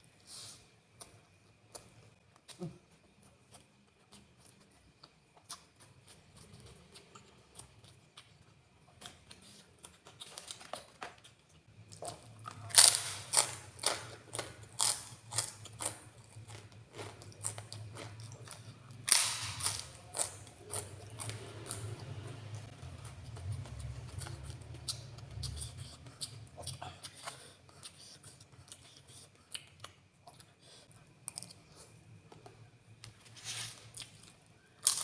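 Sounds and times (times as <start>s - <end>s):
low steady hum: 0.0s - 35.0s
crunching bites: 18.0s - 21.3s.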